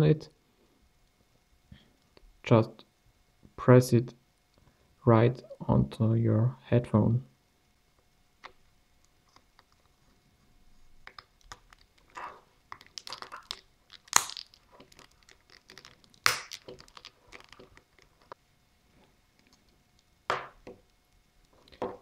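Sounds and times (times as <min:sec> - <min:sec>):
plastic cover snapping on: 0:11.1 - 0:18.4
plastic scraping and rustling: 0:11.1 - 0:19.6.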